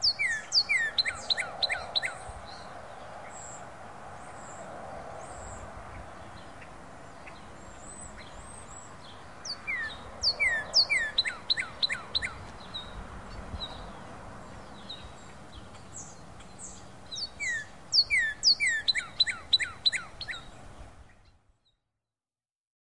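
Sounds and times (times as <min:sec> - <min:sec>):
bird whistling song: 0:00.0 - 0:02.2, 0:09.4 - 0:12.9, 0:16.0 - 0:20.5.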